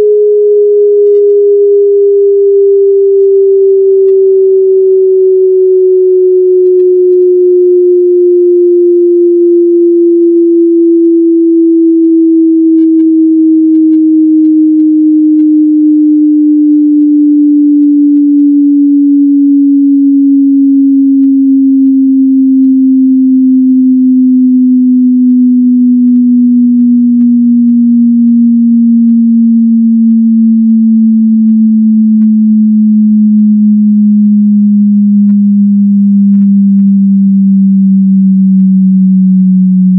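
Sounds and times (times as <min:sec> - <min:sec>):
electronic sine tone gliding downward: 0:00.0 - 0:39.9
faint high ticks: 0:24.7 - 0:34.4, 0:35.2 - 0:37.4.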